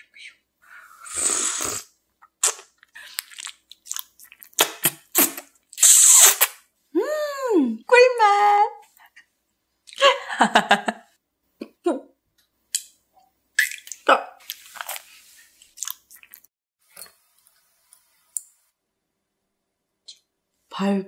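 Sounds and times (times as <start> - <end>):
chewing candy mouth sounds: 2.4 - 6.4, 15.7 - 16.5.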